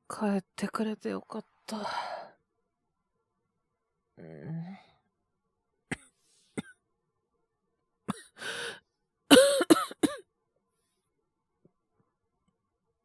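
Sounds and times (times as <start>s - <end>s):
person coughing harshly: 8.1s - 8.4s, 9.3s - 10.2s
rasping breath: 8.4s - 8.8s.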